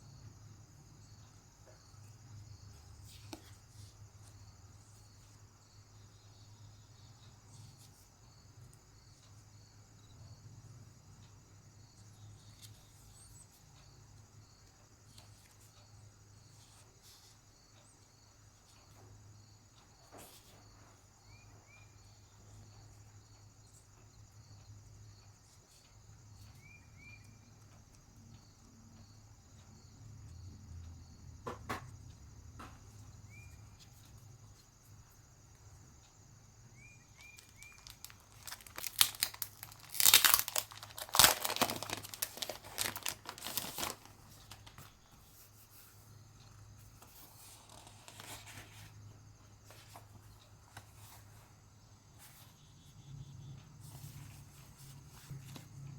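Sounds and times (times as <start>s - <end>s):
plastic packaging crinkling and tearing: 37.2s - 44.8s.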